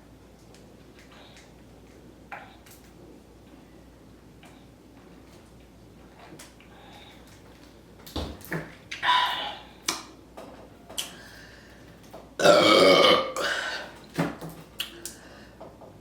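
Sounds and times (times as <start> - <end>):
person burping loudly: 12.4 - 13.9.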